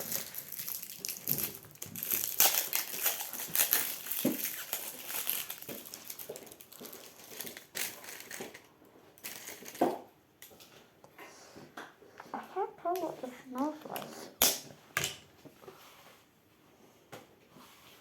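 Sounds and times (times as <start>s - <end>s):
plastic packaging crinkling: 0.0s - 10.0s.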